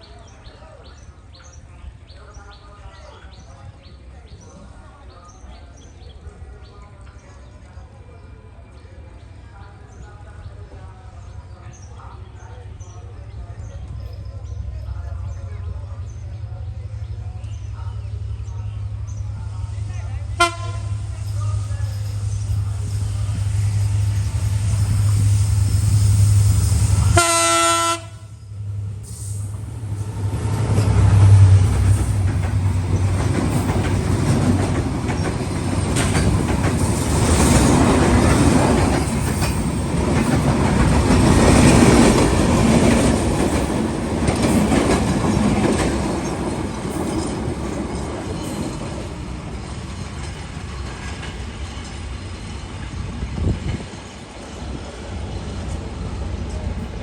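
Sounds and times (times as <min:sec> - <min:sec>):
diesel locomotive engine drone: 0:00.0 - 0:57.0
train horn blast: 0:20.4 - 0:21.2, 0:27.0 - 0:28.3
coaches clattering over rail joints: 0:29.5 - 0:57.0.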